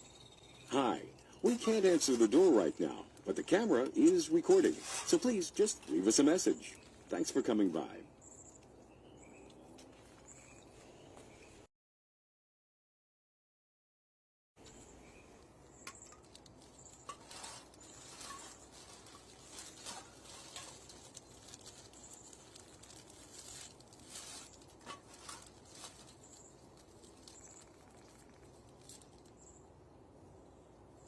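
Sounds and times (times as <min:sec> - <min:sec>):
soft irregular clicks and rustles: 0:14.6 - 0:29.5.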